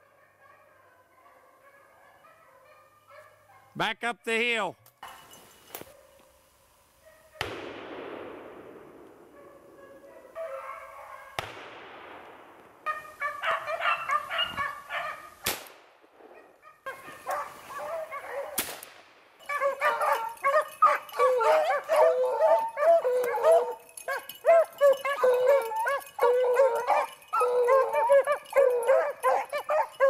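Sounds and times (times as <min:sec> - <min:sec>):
beagles baying: 0:09.4 - 0:11.4, 0:12.8 - 0:15.4, 0:16.3 - 0:18.6, 0:19.4 - 0:30.0.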